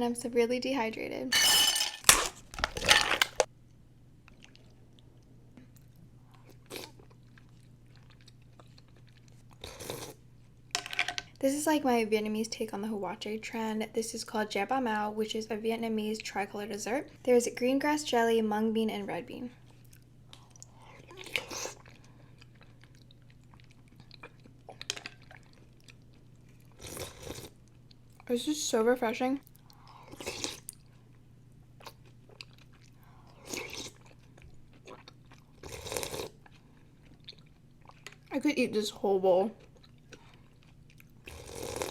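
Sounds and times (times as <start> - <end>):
faint close-up chewing: 4.2 - 10.5, 19.6 - 28.3, 29.4 - 38.3, 39.6 - 41.9.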